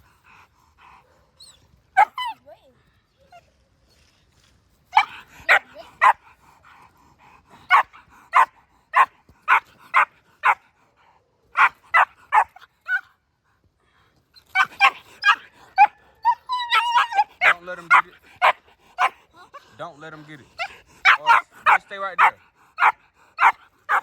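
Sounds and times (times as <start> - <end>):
dog barking: 2.0 - 2.4, 5.0 - 6.3, 7.7 - 10.6, 11.6 - 13.1, 14.6 - 19.2, 20.6 - 24.0.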